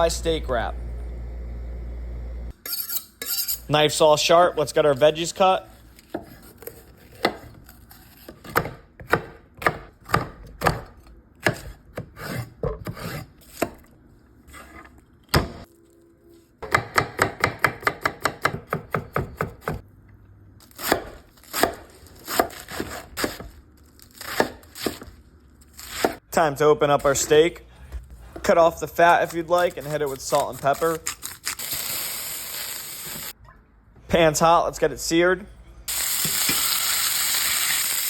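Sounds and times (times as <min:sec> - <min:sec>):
knife chopping on cutting board: 0:06.0 - 0:07.6, 0:08.2 - 0:13.8, 0:16.6 - 0:19.8, 0:20.7 - 0:23.6, 0:24.2 - 0:25.1.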